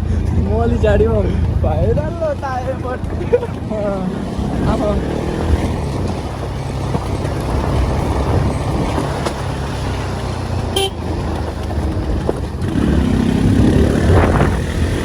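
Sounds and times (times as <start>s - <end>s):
vehicle engine rumbling: 0.0s - 15.0s
short horn toot: 10.7s - 11.0s.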